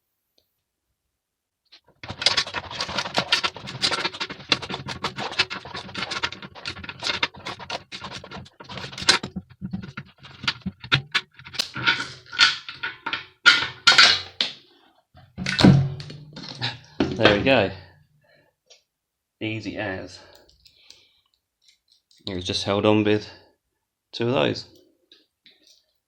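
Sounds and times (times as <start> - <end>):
hand tools clicking and scraping: 1.9 - 14.4, 15.5 - 17.6
metal scrapes and clatters: 1.9 - 14.4, 15.4 - 17.9.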